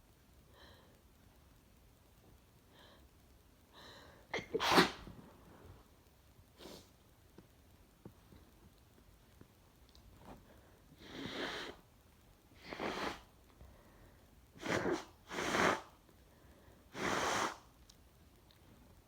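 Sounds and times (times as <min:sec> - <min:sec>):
woman sneezing: 0:04.4 - 0:05.0.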